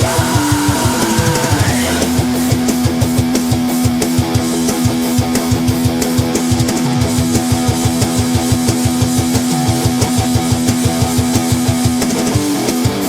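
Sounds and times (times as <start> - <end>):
cymbals: 0.0 - 3.3
electric guitar chords: 0.0 - 13.0
kick drum beats: 0.0 - 13.0.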